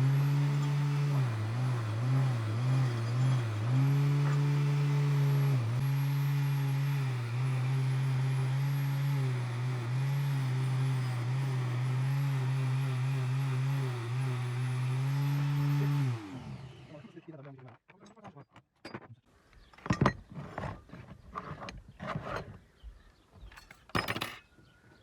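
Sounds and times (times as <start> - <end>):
electric motor humming: 0.0 - 17.1.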